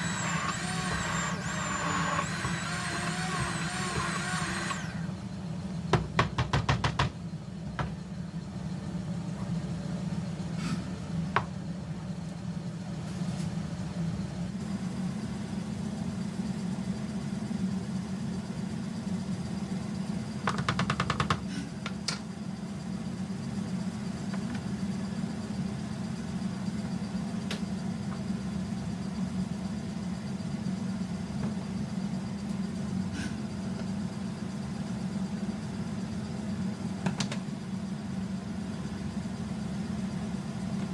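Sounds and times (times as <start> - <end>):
hand blender humming: 0.0 - 5.2.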